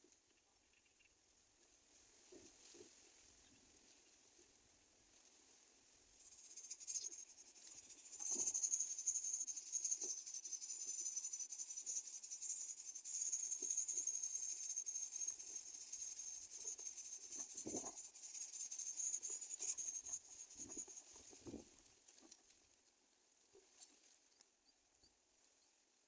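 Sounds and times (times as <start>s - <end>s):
high-pitched insect trill: 6.2s - 21.6s.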